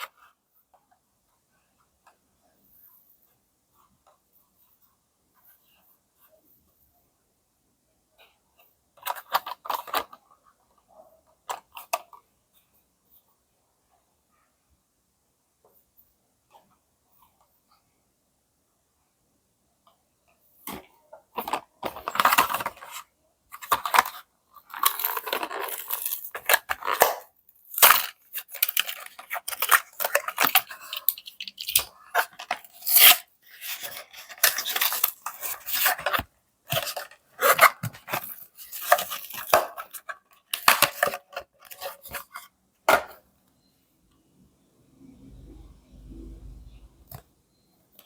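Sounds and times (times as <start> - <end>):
packaging ripping and crinkling: 32.7 - 35.9.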